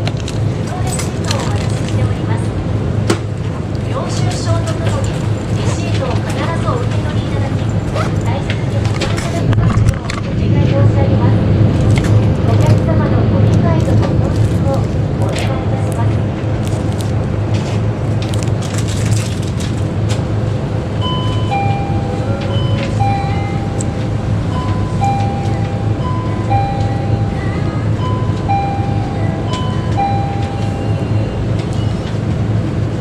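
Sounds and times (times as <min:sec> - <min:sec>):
steady low hum: 0:00.0 - 0:33.0
two-note electronic chime: 0:21.0 - 0:31.9.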